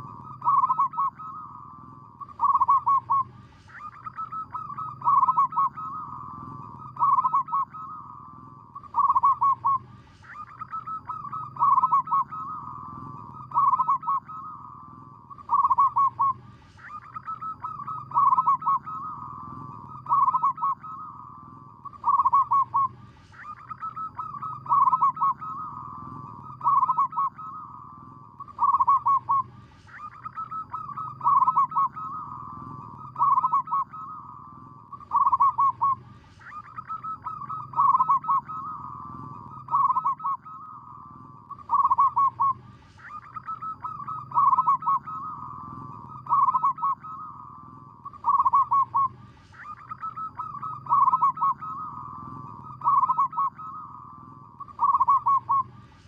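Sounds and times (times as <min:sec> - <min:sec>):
dove cooing: 0:00.0 - 0:56.0.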